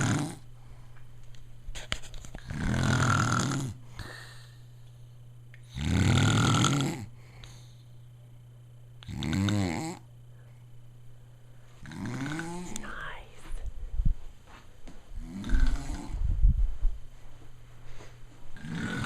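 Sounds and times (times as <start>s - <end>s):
man snoring loudly: 0.0s - 0.4s, 2.4s - 3.8s, 5.7s - 7.1s, 9.1s - 10.0s, 11.8s - 12.7s, 15.2s - 16.2s, 18.6s - 19.0s.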